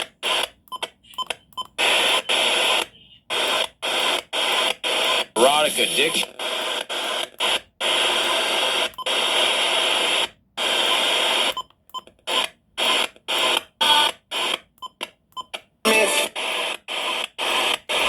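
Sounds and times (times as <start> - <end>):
radio static hissing: 1.8 - 11.5, 15.9 - 18.0.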